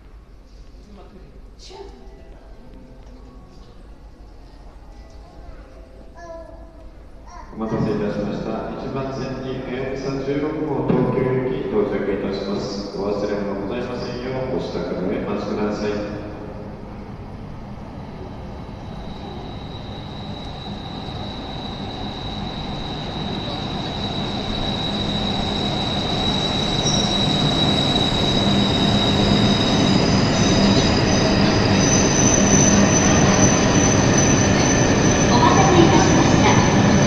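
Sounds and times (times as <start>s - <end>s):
train running noise: 7.6s - 37.0s.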